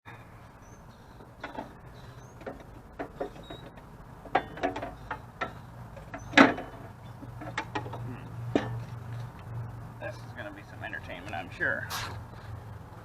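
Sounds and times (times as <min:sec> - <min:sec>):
metallic clicks and knocks: 0:01.3 - 0:01.8, 0:02.4 - 0:09.5.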